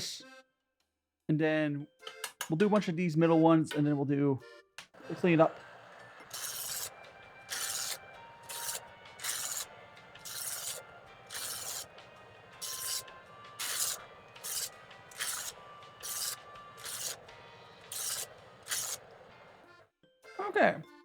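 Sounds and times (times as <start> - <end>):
blade grinding on abrasive wheels: 5.0 - 19.8
knife sharpener motor: 5.0 - 19.8.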